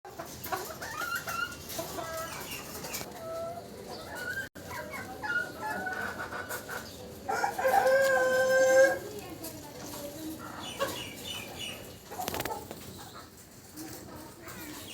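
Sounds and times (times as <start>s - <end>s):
chickens clucking: 0.1s - 14.9s.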